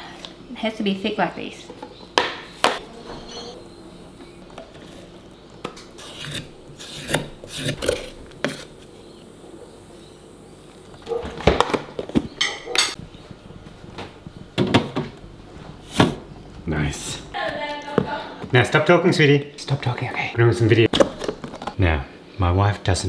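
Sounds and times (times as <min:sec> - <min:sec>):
utensil scraping and knocking bowl: 0:04.6 - 0:09.2.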